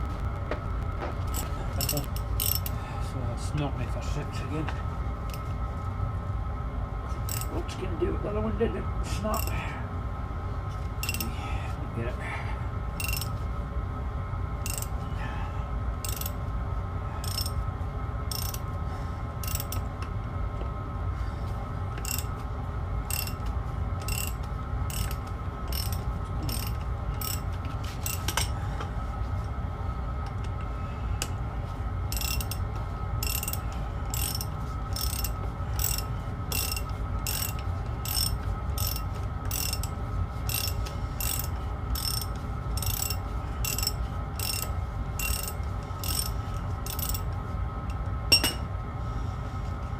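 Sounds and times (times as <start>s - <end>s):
diesel heater humming: 0.0s - 49.9s
ratchet spanner clicking: 1.3s - 2.8s, 7.3s - 7.5s, 9.4s - 9.6s, 11.0s - 11.3s, 13.0s - 13.4s, 14.6s - 15.0s, 16.0s - 16.4s, 17.2s - 17.6s, 18.3s - 18.6s, 19.4s - 19.9s, 22.0s - 22.4s, 23.1s - 28.5s, 32.1s - 32.6s, 33.2s - 47.3s.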